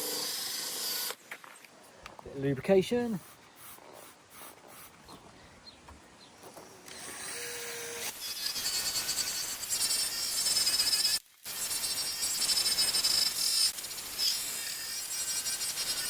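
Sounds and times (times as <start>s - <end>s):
electric drill polishing plastic: 0.0s - 1.2s.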